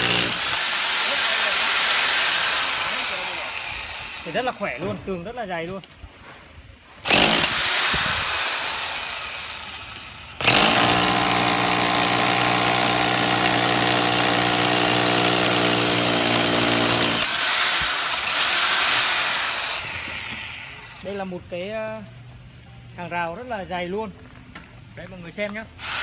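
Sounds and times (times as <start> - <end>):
hammer drill drilling into wall: 0.0 - 4.4, 7.0 - 21.0, 25.8 - 26.0
drill whining: 0.0 - 4.6, 7.0 - 21.1, 25.8 - 26.0.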